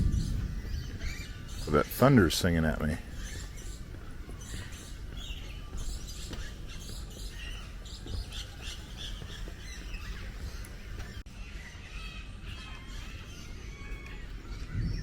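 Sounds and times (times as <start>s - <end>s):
steady low rumble: 0.0s - 1.8s
birds chirping: 0.0s - 15.0s.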